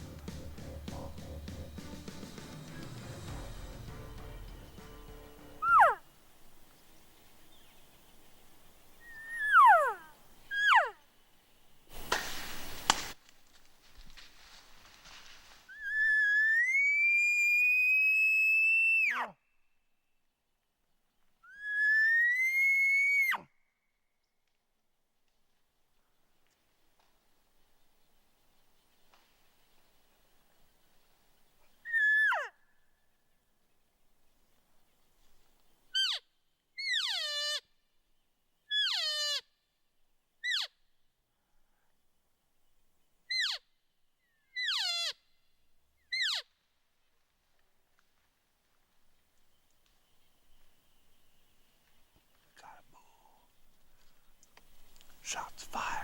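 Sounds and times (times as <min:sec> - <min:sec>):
elk bugling: 0:00.0 - 0:03.6, 0:05.3 - 0:06.0.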